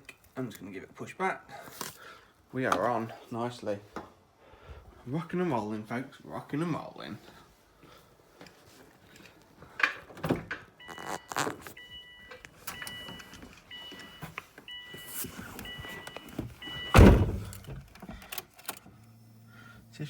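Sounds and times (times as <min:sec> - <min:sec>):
car warning chime beeping: 0:10.8 - 0:17.7
clunks: 0:15.4 - 0:18.8
loud thump: 0:17.0 - 0:17.6.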